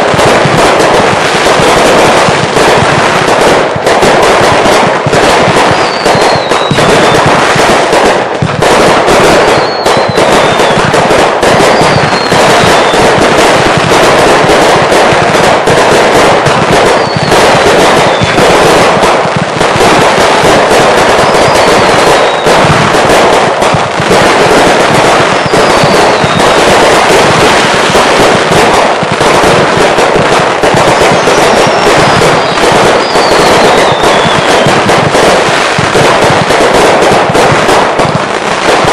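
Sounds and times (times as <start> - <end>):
fireworks bangs and crackles: 0.0 - 38.9
falling firework whistles: 5.2 - 13.3, 16.7 - 18.8, 20.6 - 23.1, 24.2 - 27.5, 30.7 - 35.6.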